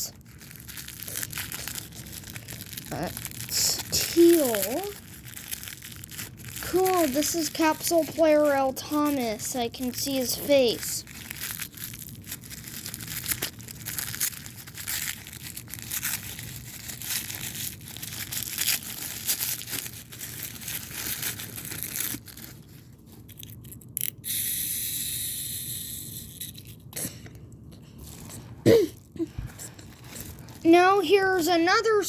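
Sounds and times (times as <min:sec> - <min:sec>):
plastic packaging crinkling: 0:00.0 - 0:24.2, 0:27.9 - 0:32.0.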